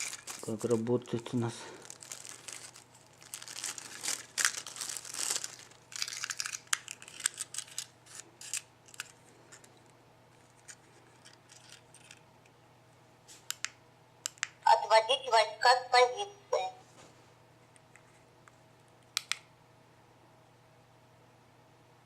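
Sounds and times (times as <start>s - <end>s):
packaging crinkling: 0.0s - 9.8s, 10.4s - 12.2s.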